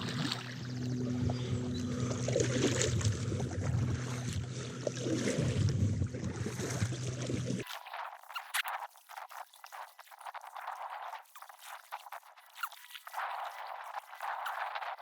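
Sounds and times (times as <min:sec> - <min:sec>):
steady low hum: 0:00.0 - 0:07.6
water splashing around kayak: 0:00.0 - 0:14.8.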